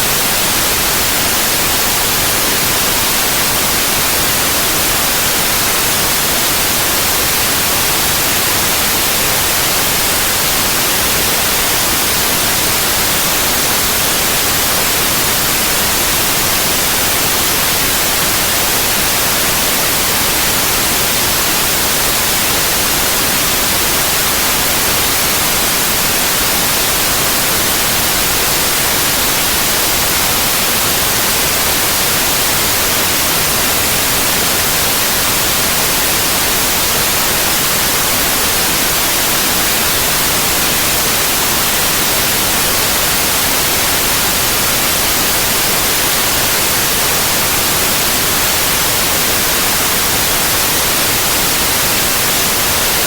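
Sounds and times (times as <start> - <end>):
loud white noise hiss: 0.0 - 53.0.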